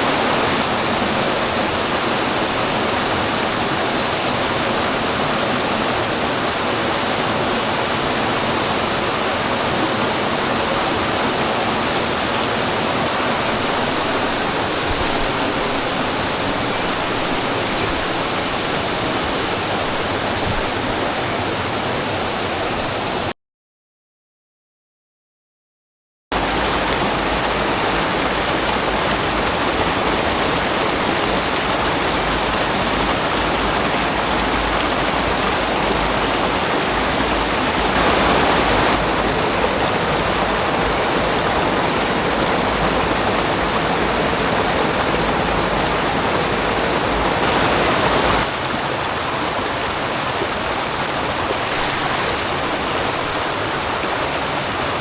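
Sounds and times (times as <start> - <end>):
water rushing over rocks: 0.0 - 23.3, 26.4 - 55.0.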